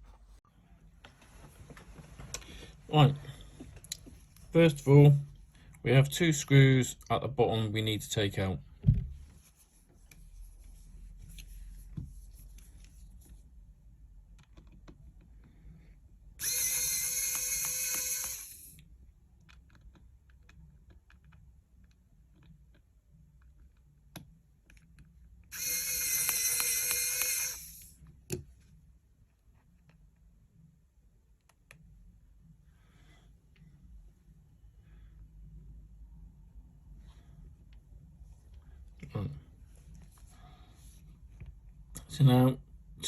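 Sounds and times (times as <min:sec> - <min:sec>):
electric screwdriver whining: 0:16.4 - 0:18.8, 0:25.5 - 0:28.0.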